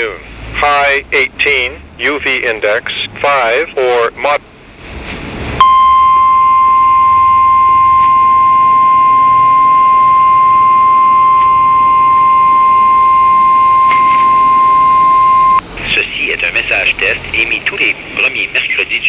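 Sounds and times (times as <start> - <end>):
steady warning beep: 5.6 - 15.6.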